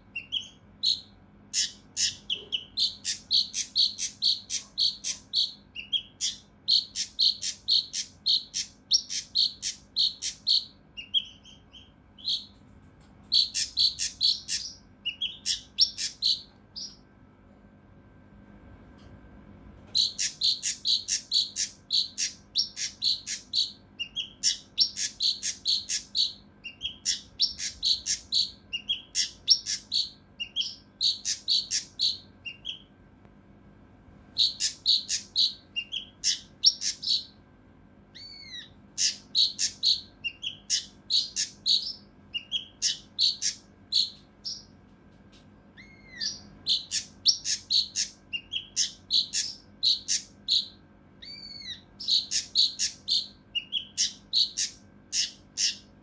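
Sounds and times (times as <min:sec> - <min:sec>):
songbird singing harsh notes: 0:34.4 - 0:37.3, 0:38.2 - 0:44.7.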